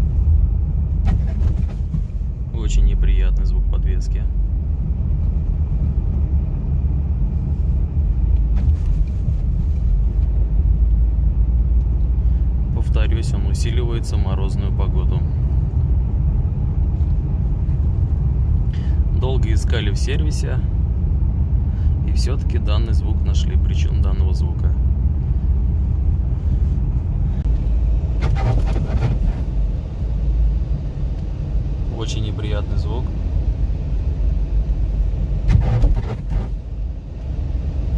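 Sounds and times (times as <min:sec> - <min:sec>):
road rumble inside car: 0:00.0 - 0:37.9
grating suspension noise: 0:28.2 - 0:29.6, 0:35.4 - 0:36.7
suspension creaking knocks: 0:35.5 - 0:36.5.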